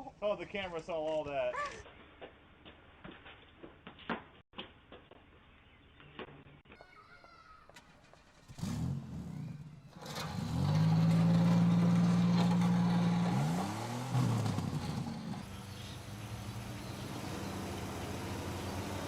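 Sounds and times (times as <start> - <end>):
car engine revving: 8.4 - 19.0.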